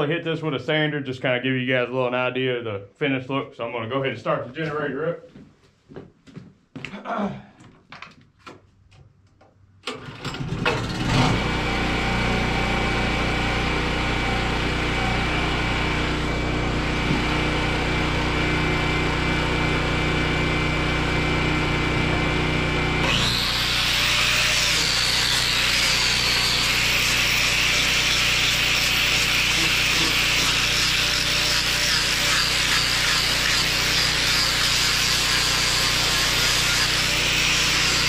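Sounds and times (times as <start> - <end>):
generator engine running: 9.9 - 30.4, 35.1 - 38.0
power sander grinding wood: 10.7 - 38.0.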